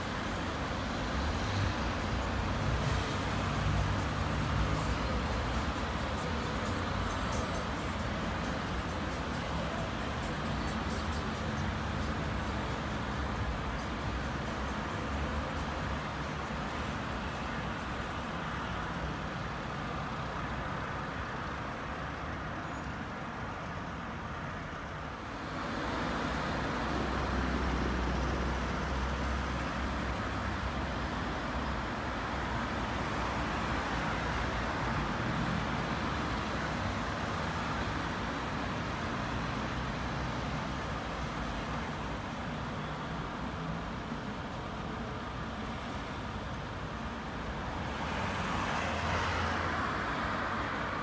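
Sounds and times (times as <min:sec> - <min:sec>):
passing cars and tyre noise: 0:00.0 - 0:51.0.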